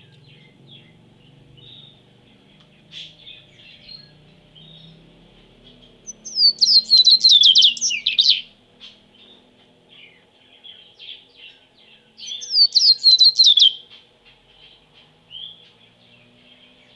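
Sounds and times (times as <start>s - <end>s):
soft bird chirps: 0.0s - 16.9s
songbird singing high notes: 6.0s - 9.0s, 12.2s - 14.0s.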